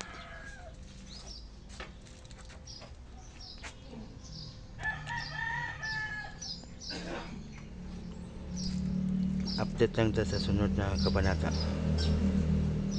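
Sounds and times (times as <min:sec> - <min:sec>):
rooster crowing: 0:00.0 - 0:00.8, 0:04.7 - 0:06.7
small birds chirping: 0:00.0 - 0:12.9.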